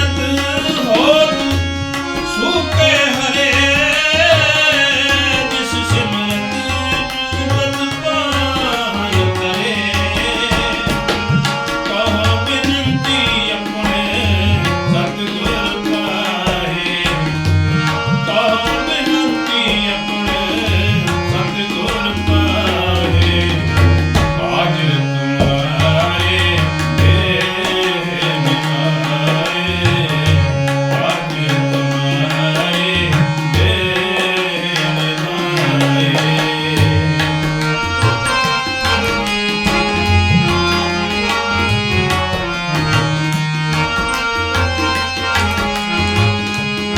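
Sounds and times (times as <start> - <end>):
tabla drumming: 0.0 - 46.9
sustained melodic tones: 30.4 - 46.9.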